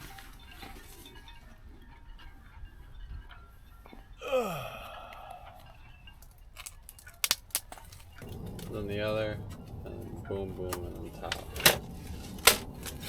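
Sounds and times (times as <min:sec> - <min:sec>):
faint background noise: 0:00.0 - 0:13.0
person groaning: 0:04.2 - 0:05.7.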